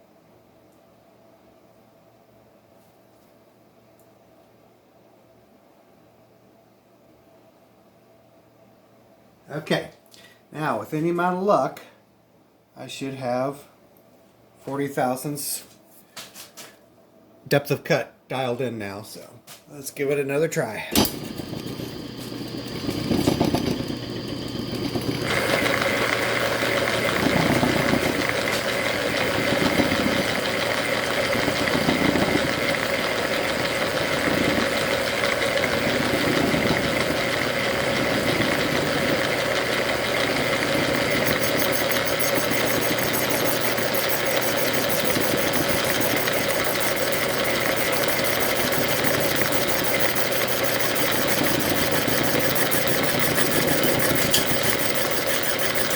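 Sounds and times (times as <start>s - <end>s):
high whine: 21.1s - 55.9s
lathe motor humming: 21.1s - 55.9s
low pulsing: 38.0s - 55.9s.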